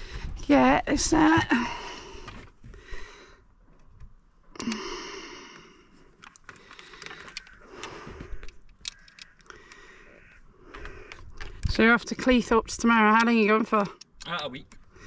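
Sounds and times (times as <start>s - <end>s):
person sighing: 4.6s - 5.9s
light clicks and taps: 6.2s - 9.9s, 12.8s - 14.9s.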